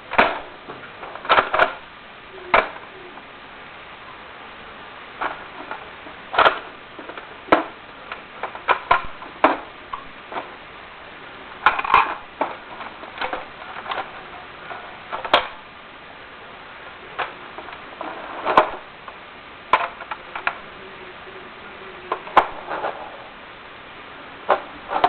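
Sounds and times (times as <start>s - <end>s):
plastic clicks and clacks: 1.0s - 1.8s, 6.4s - 10.5s, 11.6s - 15.6s, 18.5s - 20.6s.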